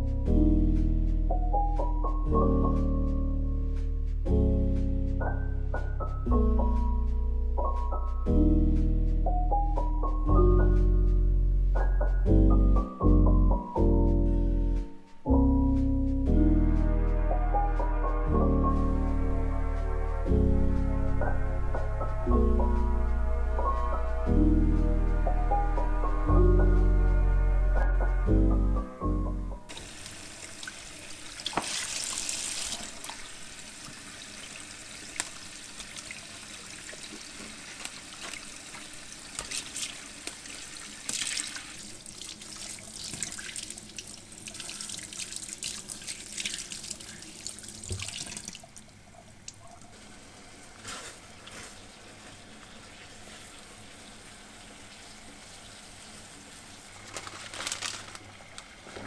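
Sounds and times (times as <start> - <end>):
tap water running into sink: 29.7 - 56.8.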